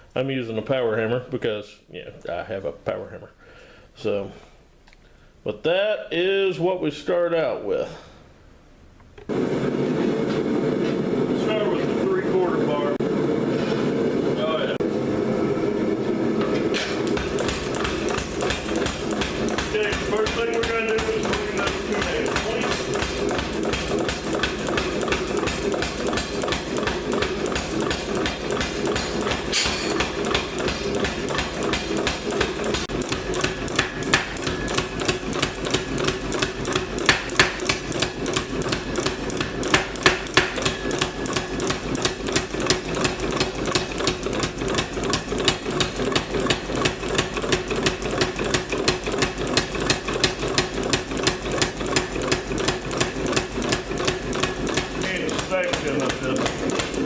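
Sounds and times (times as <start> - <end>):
power hammer pounding hot steel: 14.8 - 57.0.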